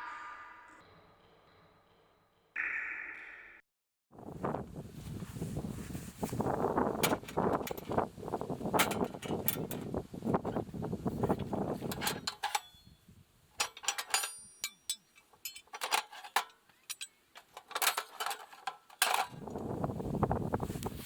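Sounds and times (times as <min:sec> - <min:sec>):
rustling handling noise: 0:04.4 - 0:12.8, 0:13.6 - 0:19.6
cookware clinking and knocking: 0:13.6 - 0:19.4.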